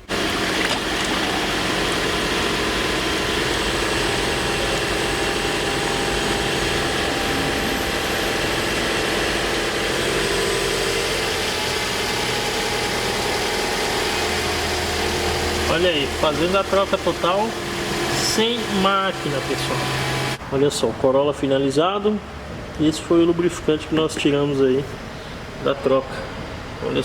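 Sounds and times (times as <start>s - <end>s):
car engine idling: 0.0s - 20.4s.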